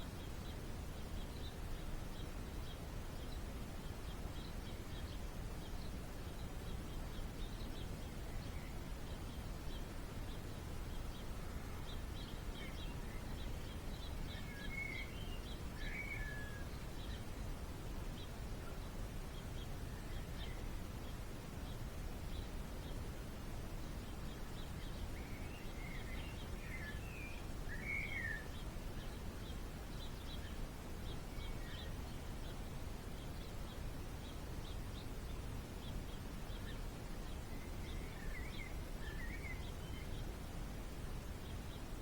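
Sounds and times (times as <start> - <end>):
small birds chirping: 0.0 - 42.0.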